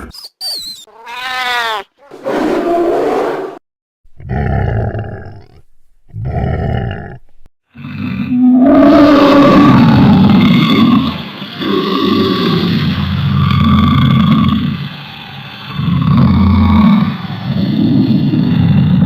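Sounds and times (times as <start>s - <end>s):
dragon roars: 7.8s - 19.0s.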